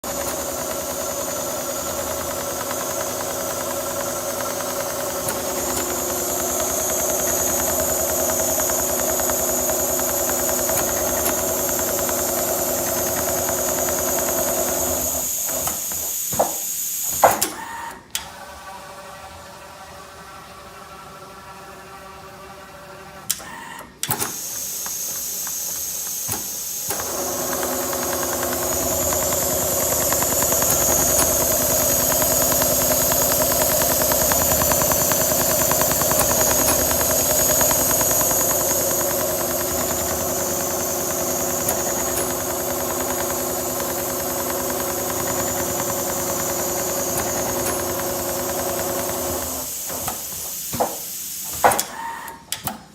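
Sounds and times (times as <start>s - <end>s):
sewing machine clicks: 0.0s - 16.6s, 23.3s - 50.3s
sewing machine stitching: 0.0s - 16.7s, 23.3s - 50.3s
sewing machine knocks: 27.0s - 49.4s.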